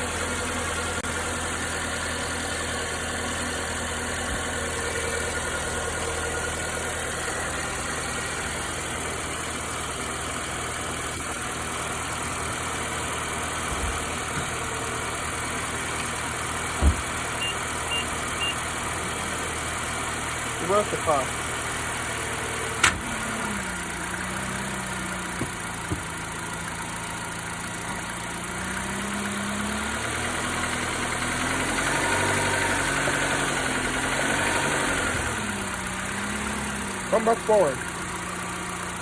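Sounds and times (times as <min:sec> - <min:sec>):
car engine idling: 0:00.0 - 0:39.0
engine knocking: 0:00.0 - 0:39.0
loud thump: 0:13.7 - 0:14.6, 0:16.7 - 0:17.3, 0:25.4 - 0:26.1
short high beeps: 0:17.4 - 0:18.6.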